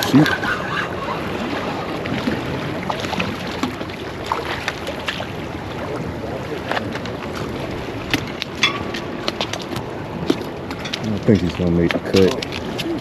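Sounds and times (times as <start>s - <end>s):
water washing: 0.0s - 13.0s
wind buffeting microphone: 0.0s - 13.0s.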